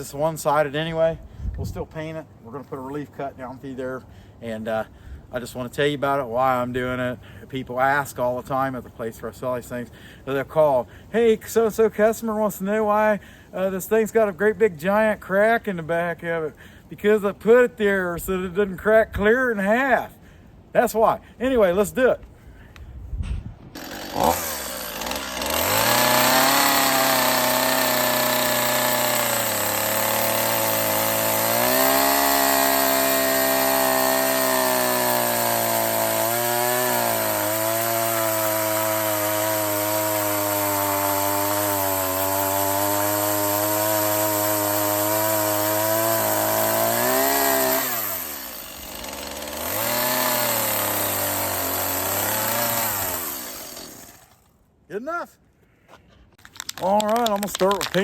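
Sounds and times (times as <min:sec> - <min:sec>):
chainsaw cutting wood: 0:23.7 - 0:54.5, 0:56.4 - 0:58.0.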